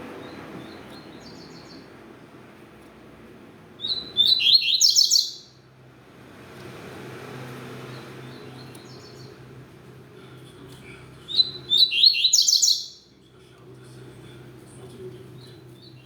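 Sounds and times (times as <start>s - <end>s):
faint bird chirps: 3.8s - 5.5s, 11.2s - 13.2s
bird singing rapid high notes: 3.8s - 5.6s, 11.3s - 13.1s.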